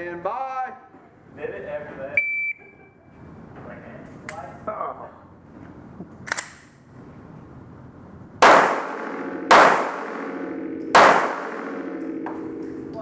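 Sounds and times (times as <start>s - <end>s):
pistol shots echoing: 8.4s - 12.6s.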